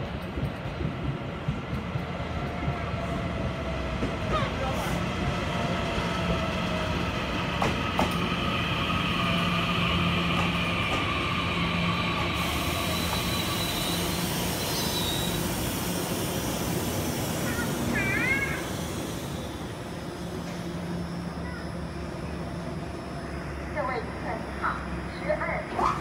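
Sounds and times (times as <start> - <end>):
hiss: 12.4 - 19.6.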